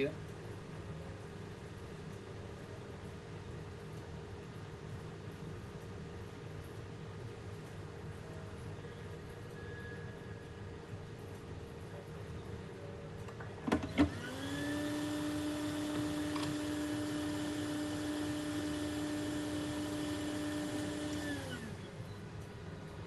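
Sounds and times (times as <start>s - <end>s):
small electric motor humming: 14.0s - 22.0s.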